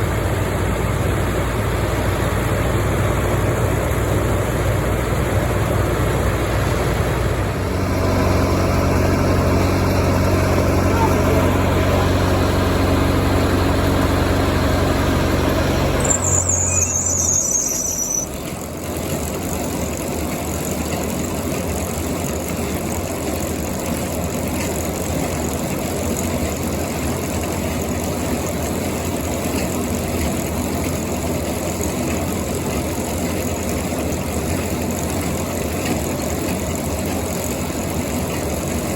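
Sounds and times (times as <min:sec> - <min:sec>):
farm machinery engine running: 0:00.0 - 0:38.9
high squeal: 0:15.5 - 0:18.5.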